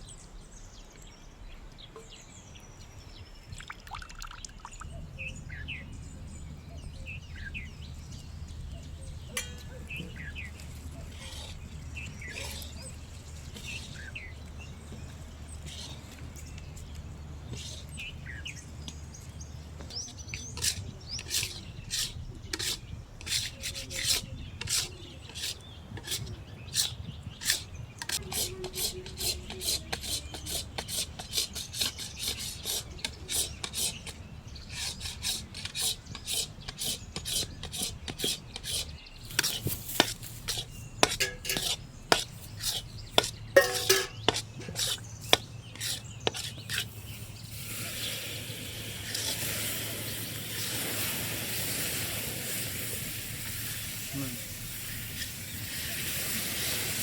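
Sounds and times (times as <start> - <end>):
spatula scraping a pan: 9.3 - 14.3, 15.6 - 16.2, 17.5 - 18.0, 20.4 - 51.1.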